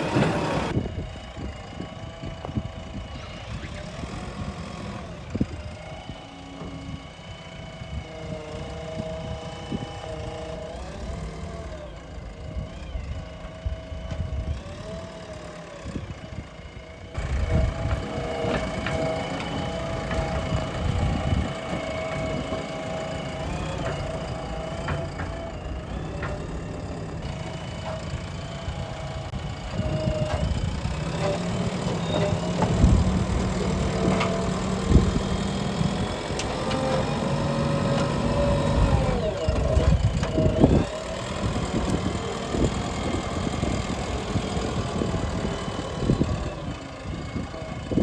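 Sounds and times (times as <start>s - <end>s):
digger diesel engine whining: 0.0s - 48.0s.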